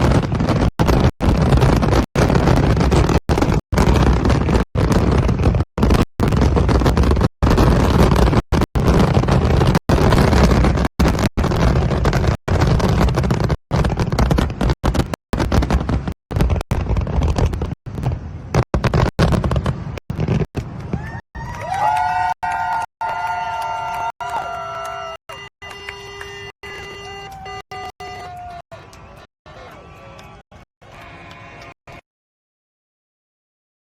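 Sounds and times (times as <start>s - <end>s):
fireworks rumbling and crackling: 0.0s - 31.8s
whistling fireworks: 0.0s - 32.0s.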